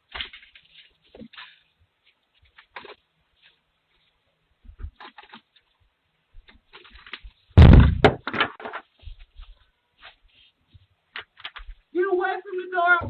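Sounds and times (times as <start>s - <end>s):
rustling: 0.0s - 11.9s
sharp hit: 7.6s - 8.1s
heavy thump: 7.6s - 8.2s.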